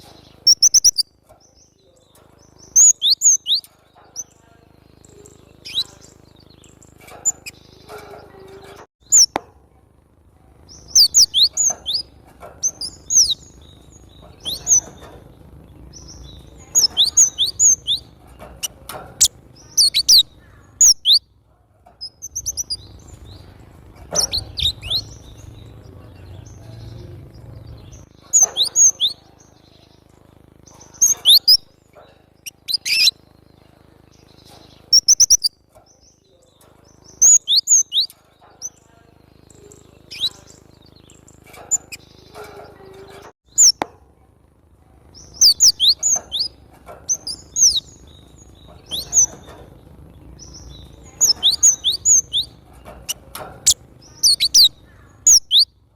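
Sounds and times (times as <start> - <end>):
bird chirping: 0.0 - 9.5, 10.5 - 44.0, 45.0 - 55.9.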